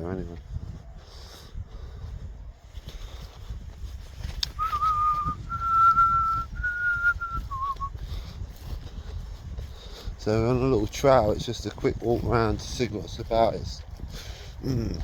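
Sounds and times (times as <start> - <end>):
person whistling notes: 4.5 - 7.9.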